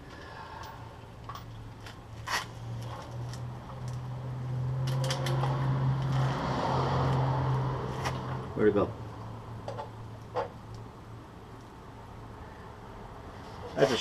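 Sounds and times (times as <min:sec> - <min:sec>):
rustle and clatter: 0:00.0 - 0:04.2.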